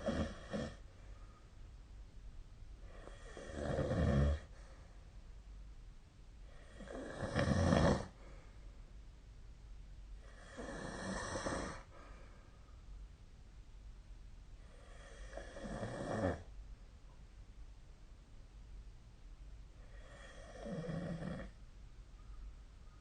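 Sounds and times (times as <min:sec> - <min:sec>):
person snoring: 0:00.0 - 0:00.8, 0:02.9 - 0:04.5, 0:06.5 - 0:08.2, 0:10.2 - 0:11.9, 0:14.7 - 0:16.5, 0:19.8 - 0:21.5.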